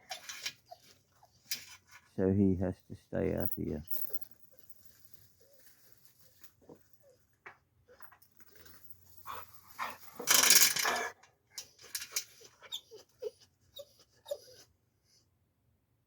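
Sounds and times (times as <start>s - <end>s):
dog whining and whimpering: 0.0s - 1.6s, 10.9s - 14.7s.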